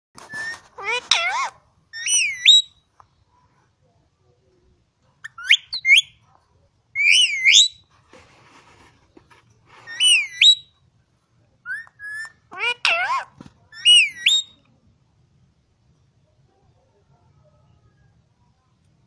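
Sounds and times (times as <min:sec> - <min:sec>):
parakeet whistling: 0:00.3 - 0:02.8, 0:05.2 - 0:06.1, 0:07.0 - 0:07.8, 0:09.9 - 0:10.7, 0:11.7 - 0:13.2, 0:13.8 - 0:14.6.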